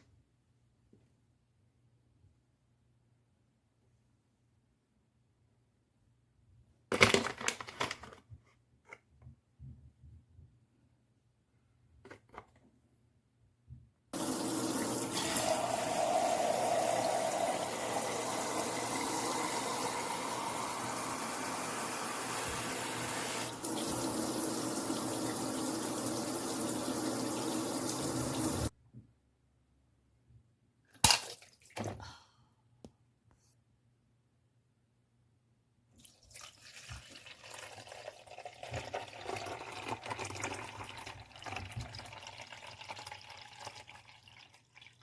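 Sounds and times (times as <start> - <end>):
water running from a tap: 14.2 - 28.7, 36.3 - 45.0.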